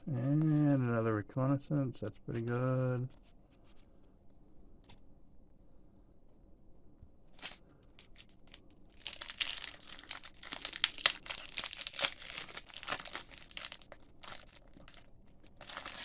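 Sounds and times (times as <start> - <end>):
foil wrapper crinkling and tearing: 7.4 - 16.0.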